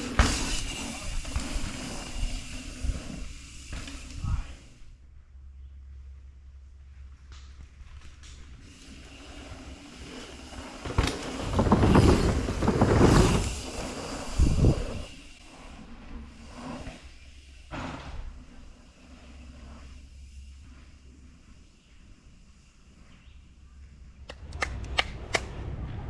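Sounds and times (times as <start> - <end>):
bike tyre noise: 0.0 - 24.5
wind noise: 11.4 - 15.3.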